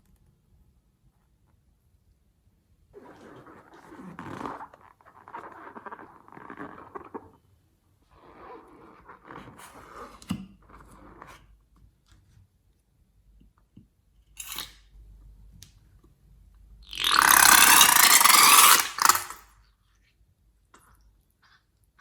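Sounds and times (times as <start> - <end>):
slime squelching and crackling: 3.0 - 7.5.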